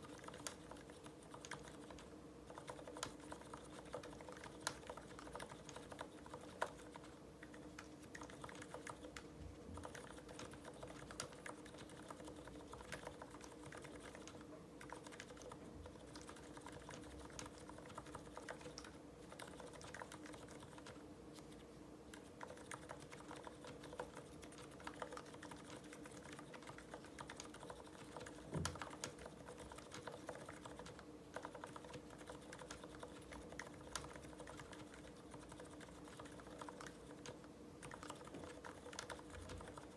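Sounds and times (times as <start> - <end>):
faint steady hum: 0.0 - 39.9
soft muted keyboard typing: 0.0 - 39.9.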